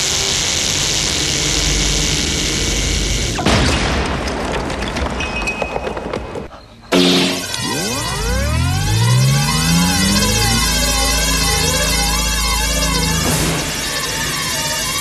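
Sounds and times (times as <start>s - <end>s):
whirring hum: 0.0s - 3.4s, 6.9s - 15.0s
swooping tones: 6.9s - 15.0s.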